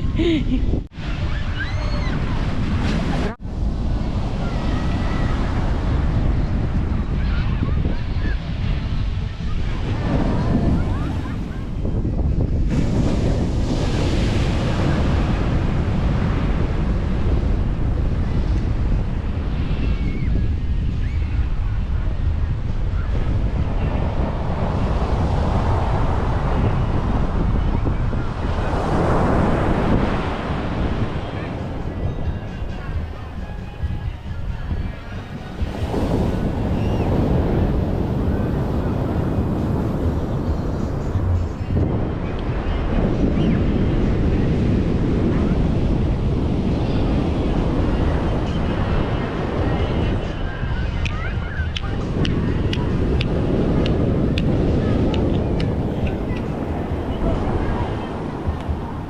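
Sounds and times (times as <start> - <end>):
surf on a beach: 0.0 - 59.0
wind buffeting microphone: 0.0 - 59.0
faint distant voices: 18.2 - 59.0.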